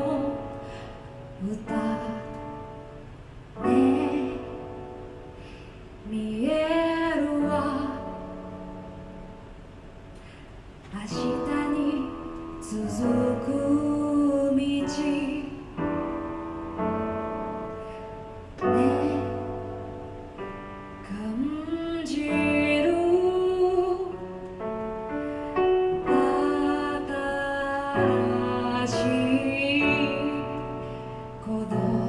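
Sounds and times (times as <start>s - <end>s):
woman singing: 0.0s - 3.0s, 3.6s - 4.9s, 6.0s - 8.8s, 10.9s - 16.2s, 18.6s - 19.9s, 21.0s - 24.4s, 25.2s - 32.0s
piano chords: 0.0s - 32.0s.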